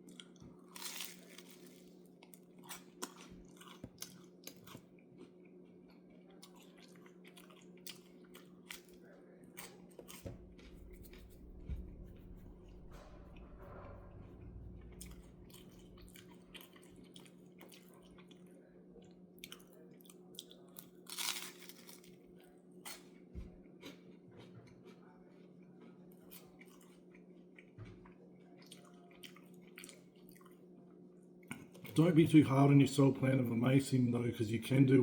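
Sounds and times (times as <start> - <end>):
person chewing toast: 0.0 - 12.3, 14.9 - 30.6
steady low hum: 8.6 - 19.5.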